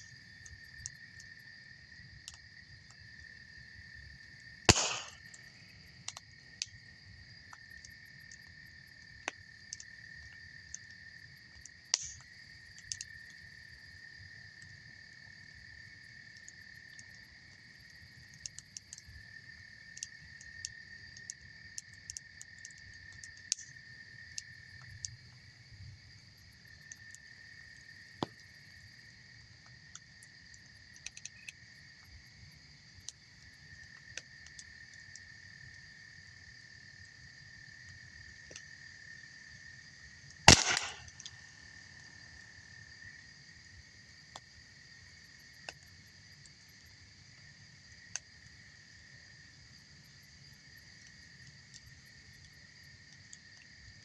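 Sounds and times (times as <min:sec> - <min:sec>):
insects trilling: 0:00.0 - 0:54.0
campfire crackling and popping: 0:04.7 - 0:06.8, 0:09.1 - 0:13.4, 0:40.5 - 0:41.5.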